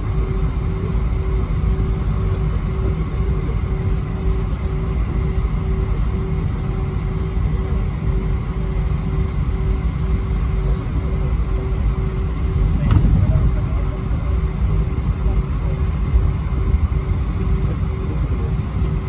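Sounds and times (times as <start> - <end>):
airliner cabin rumble: 0.0 - 19.0
steady hum: 0.0 - 19.0.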